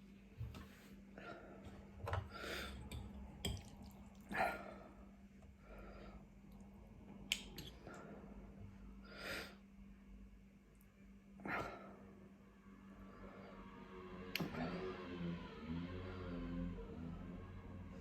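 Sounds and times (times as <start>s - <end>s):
low steady hum: 0.0s - 18.0s
person breathing hard: 2.3s - 2.9s.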